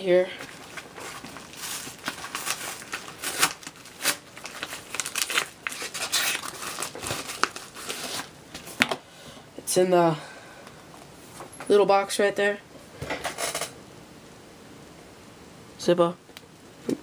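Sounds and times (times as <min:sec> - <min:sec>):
packaging crinkling and rustling: 0:00.4 - 0:08.9
packaging tearing: 0:00.5 - 0:08.3.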